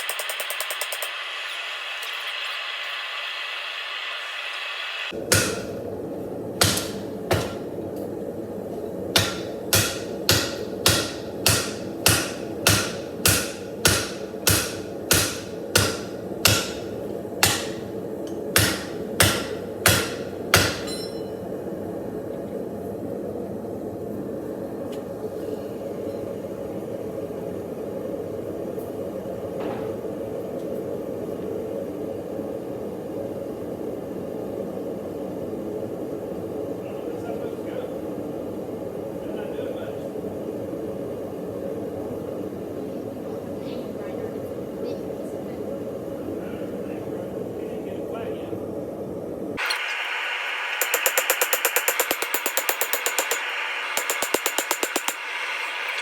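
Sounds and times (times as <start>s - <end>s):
forge burner rushing: 0.0s - 21.0s, 49.5s - 56.0s
hammer striking metal: 5.3s - 5.8s, 6.6s - 7.7s, 9.2s - 17.8s, 18.6s - 21.4s, 50.8s - 55.2s.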